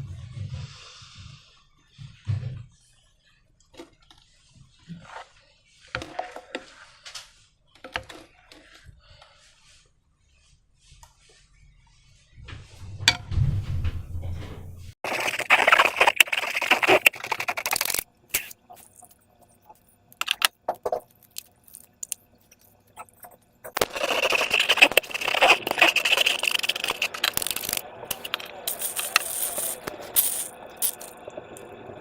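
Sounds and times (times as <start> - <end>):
slime squeezed wet crackling: 15.0 - 31.2.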